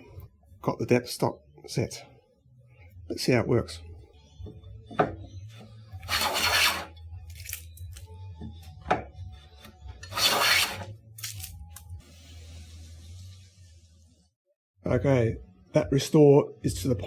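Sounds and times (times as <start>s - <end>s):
hand plane cutting wood: 6.0s - 7.0s, 10.0s - 10.9s.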